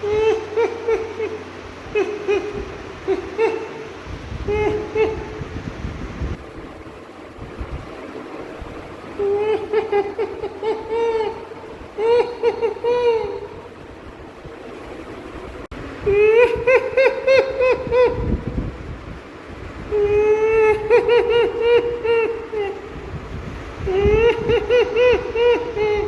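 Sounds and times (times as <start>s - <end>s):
steady hiss: 0.0s - 26.0s.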